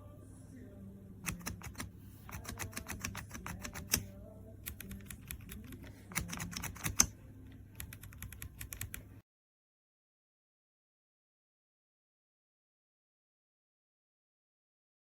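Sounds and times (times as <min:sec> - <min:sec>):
mechanical keyboard key clacks: 0:01.3 - 0:04.0, 0:04.7 - 0:07.1, 0:07.8 - 0:09.0.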